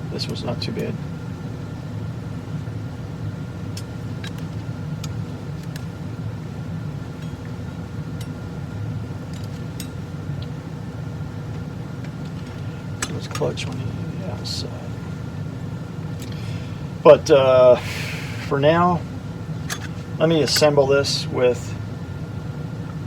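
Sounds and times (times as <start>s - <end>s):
low background hum: 0.0s - 23.0s
clutch plates clicking: 3.7s - 6.0s, 9.3s - 10.6s, 11.5s - 13.9s, 19.6s - 20.8s.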